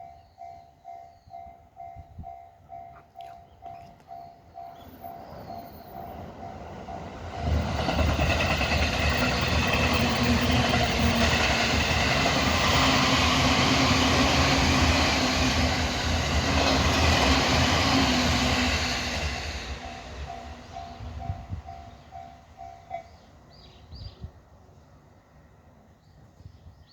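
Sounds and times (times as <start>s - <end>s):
level crossing warning bell: 0.0s - 13.2s
train wheels clattering on rails: 4.1s - 23.2s.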